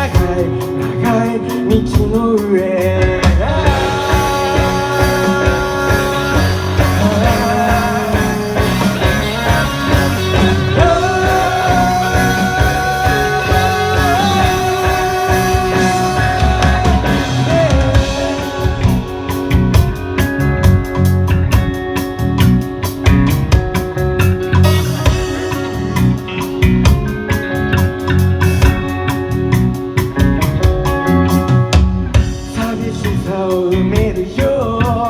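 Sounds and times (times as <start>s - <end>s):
person singing: 0.0s - 20.4s, 32.3s - 35.0s
rock band music: 0.0s - 35.0s.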